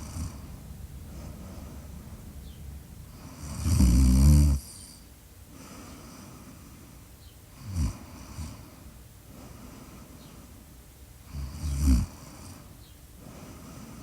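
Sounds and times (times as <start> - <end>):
loud snoring: 0.0 - 0.5, 3.1 - 5.0, 7.6 - 8.6, 11.3 - 12.7
quiet breathing: 0.0 - 14.0.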